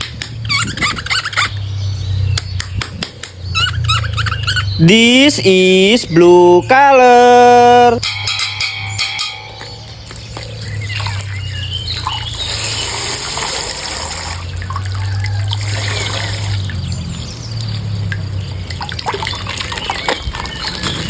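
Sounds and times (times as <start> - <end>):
small splashes and clicks: 10.0 - 21.0
water trickling from plastic bag: 10.0 - 21.0.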